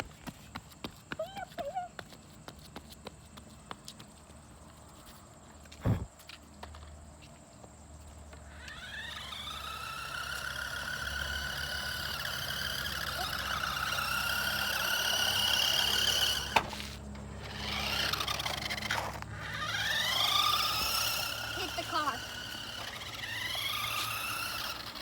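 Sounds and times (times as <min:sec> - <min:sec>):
toy electric motor whining: 0:08.3 - 0:25.0.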